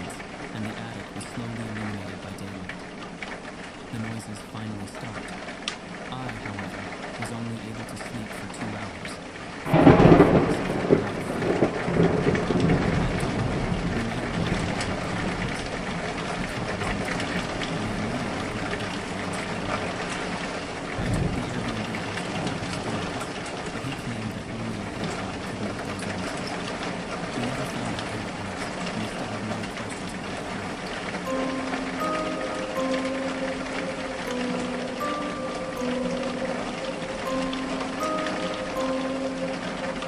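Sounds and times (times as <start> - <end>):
falling rain: 0.0 - 40.0
thunder rumbling: 9.7 - 23.8.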